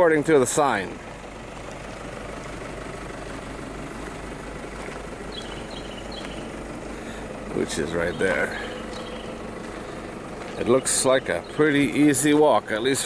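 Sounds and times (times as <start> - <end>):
constant low hum: 0.0 - 13.0
bird chirping: 5.3 - 12.9.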